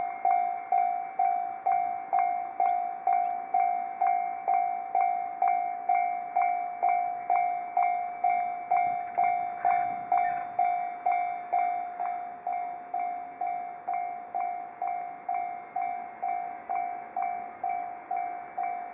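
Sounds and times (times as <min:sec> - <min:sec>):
railroad crossing bell ringing: 0:00.0 - 0:18.9.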